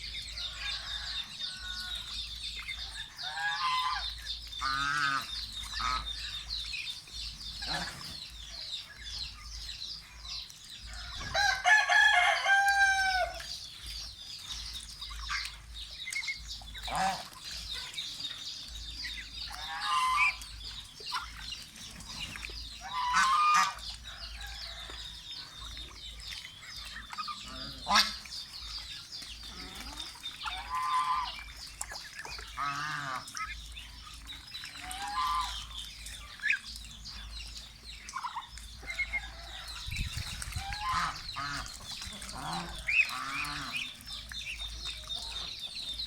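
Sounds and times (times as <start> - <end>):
chickens clucking: 0.0 - 46.0
rooster crowing: 11.3 - 13.4.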